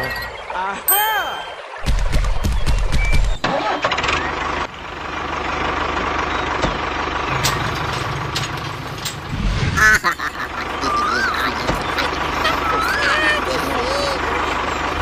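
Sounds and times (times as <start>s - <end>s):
engine idling: 3.4s - 15.0s.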